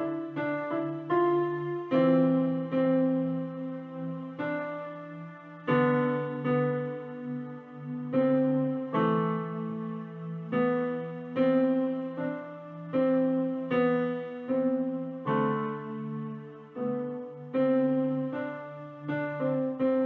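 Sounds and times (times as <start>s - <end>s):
electronic keyboard piano chords: 0.0s - 20.0s.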